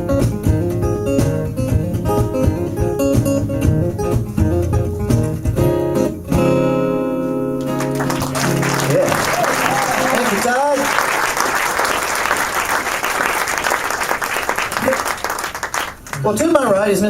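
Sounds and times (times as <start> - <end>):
acoustic guitar picked and strummed: 0.0 - 10.2
audience applause: 7.6 - 16.4.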